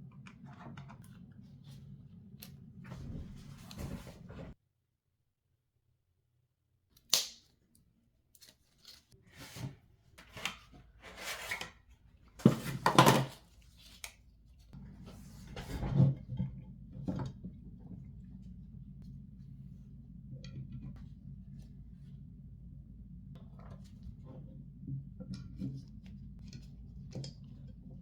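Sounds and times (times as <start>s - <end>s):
steady low hum: 14.3s - 28.0s.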